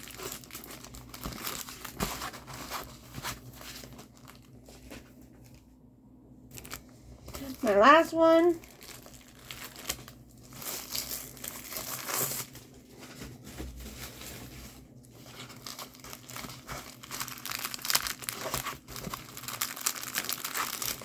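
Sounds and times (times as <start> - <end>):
packaging tearing: 0.0 - 4.6, 8.6 - 12.7, 15.4 - 21.0
packaging crinkling: 0.0 - 5.7, 6.5 - 21.0.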